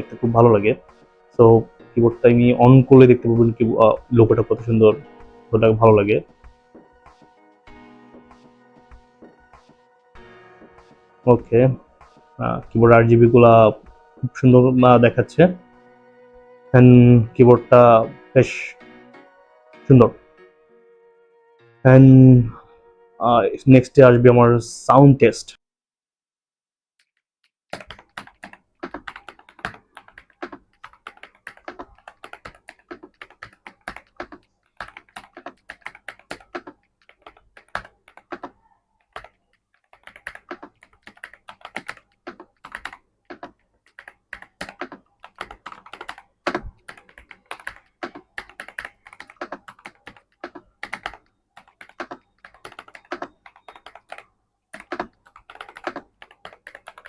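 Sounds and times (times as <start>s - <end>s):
mechanical keyboard typing: 27.7s - 57.0s.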